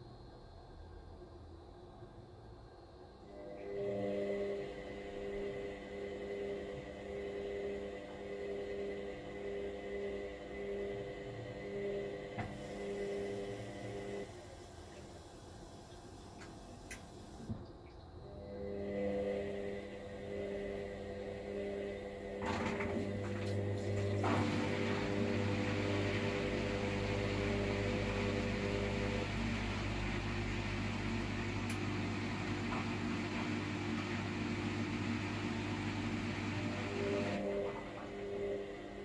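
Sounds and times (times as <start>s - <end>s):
washer-dryer humming: 3.3s - 39.0s
drum motor running with clicks: 22.4s - 38.2s.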